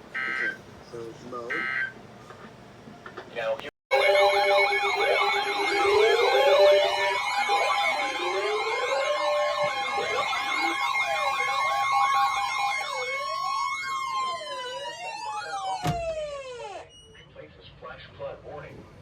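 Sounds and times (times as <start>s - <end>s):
sirens sweeping up and down: 3.9s - 16.9s.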